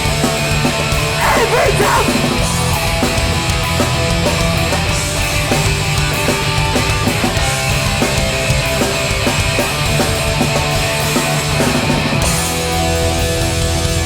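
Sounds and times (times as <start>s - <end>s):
punk band playing loud: 0.0s - 14.0s.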